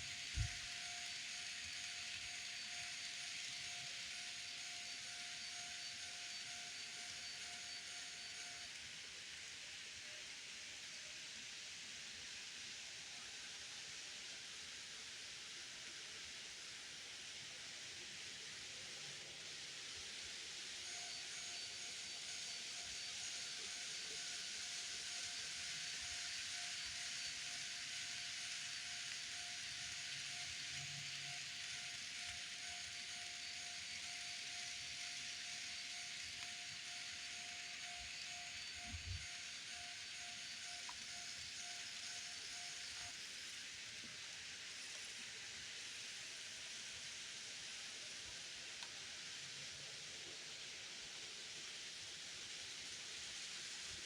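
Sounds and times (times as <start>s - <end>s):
model train hiss: 0.0s - 54.0s
faint steady tone: 18.7s - 50.7s.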